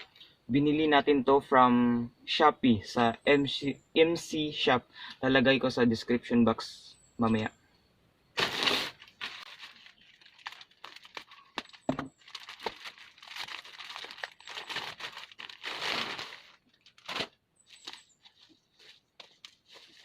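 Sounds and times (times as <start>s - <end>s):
package tearing: 8.4s - 18.4s
package crinkling: 8.9s - 20.0s.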